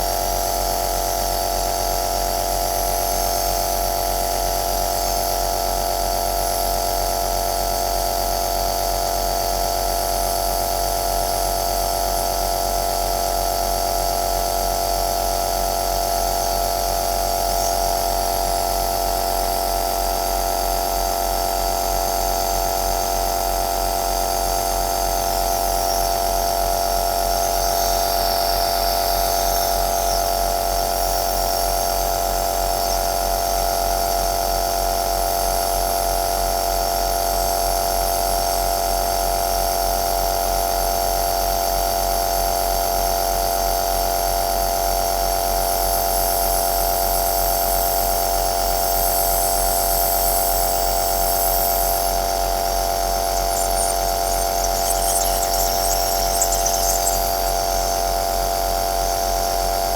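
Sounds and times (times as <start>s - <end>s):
nebulizer motor humming: 53.4s - 57.9s.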